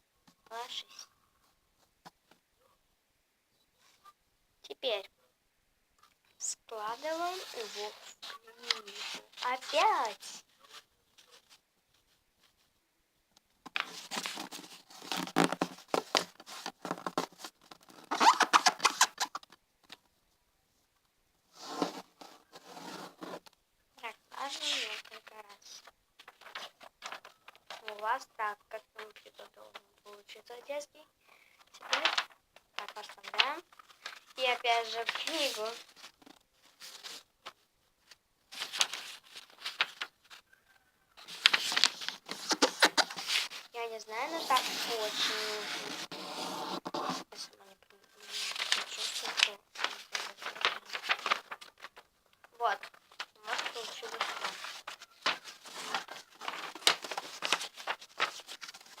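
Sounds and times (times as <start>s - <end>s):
paper rustling and crackling: 6.8s - 12.7s, 13.6s - 20.1s, 24.1s - 30.4s, 31.6s - 59.0s.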